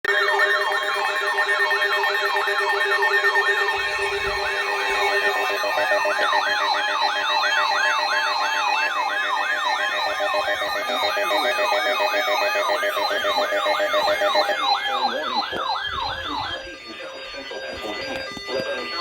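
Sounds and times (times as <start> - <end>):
electronic siren yelping: 0.1 - 19.0
fast warbling siren: 0.1 - 19.0.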